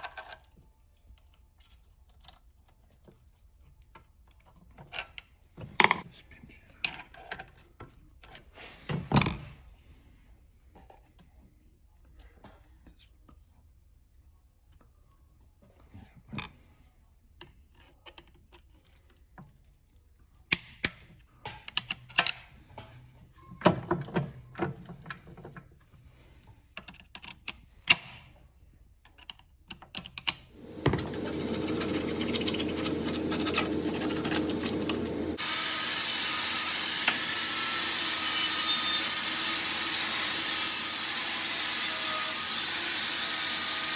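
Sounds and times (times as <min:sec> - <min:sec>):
steady hissing machine noise: 0:30.6 - 0:38.0.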